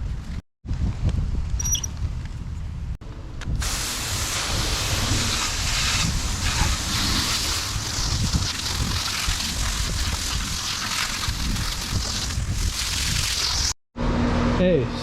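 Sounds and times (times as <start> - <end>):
running water hissing: 3.6 - 13.8.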